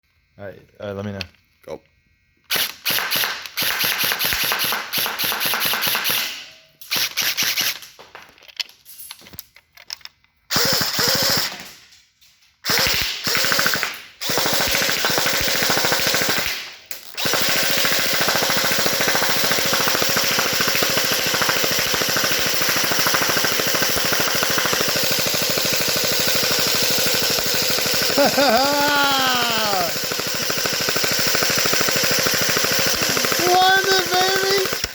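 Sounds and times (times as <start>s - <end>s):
airsoft rifle firing full-auto: 2.5s - 7.8s, 10.5s - 11.7s, 12.6s - 34.9s.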